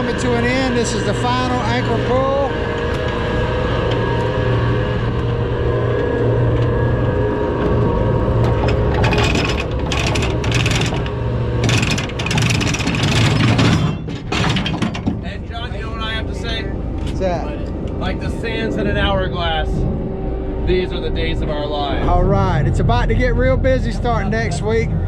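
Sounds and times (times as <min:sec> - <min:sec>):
anchor winch humming: 0:00.0 - 0:25.0
rattling chain clatter: 0:08.5 - 0:15.2.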